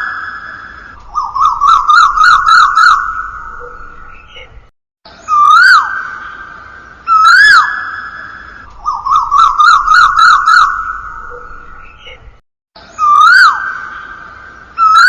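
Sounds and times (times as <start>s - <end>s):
whistled birdsong ringtone: 0.0s - 4.5s, 7.1s - 12.2s.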